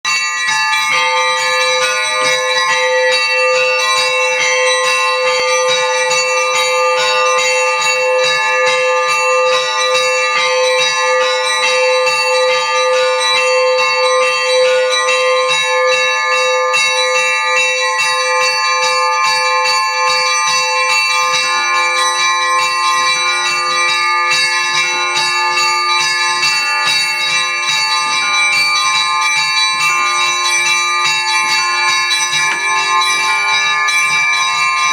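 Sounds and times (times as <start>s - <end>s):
church bells pealing: 0.1s - 34.9s
bell struck in quick rhythm: 20.3s - 34.9s.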